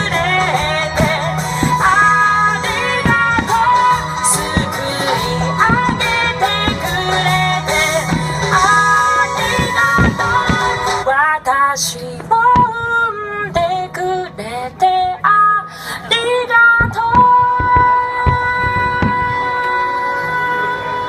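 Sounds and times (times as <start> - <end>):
fireworks thudding: 0.0 - 11.1, 12.2 - 13.2, 16.6 - 19.8
woman singing a ballad: 0.0 - 21.0.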